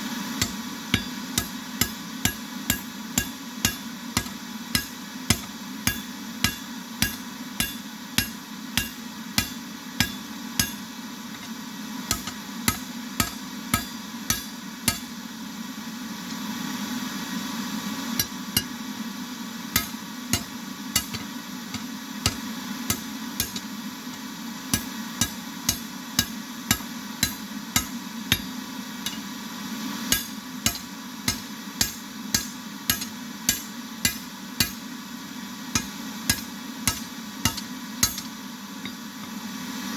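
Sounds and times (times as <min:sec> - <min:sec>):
hammer ringing on anvil: 0:00.4 - 0:10.9, 0:12.1 - 0:15.1, 0:18.2 - 0:18.8, 0:19.8 - 0:23.7, 0:24.7 - 0:29.3, 0:30.1 - 0:34.8, 0:35.8 - 0:39.0.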